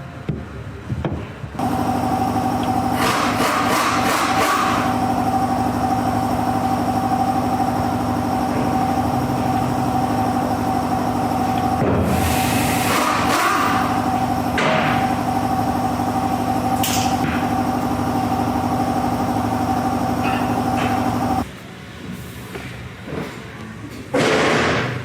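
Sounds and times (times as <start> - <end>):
motor machine rattling: 1.6 - 21.4.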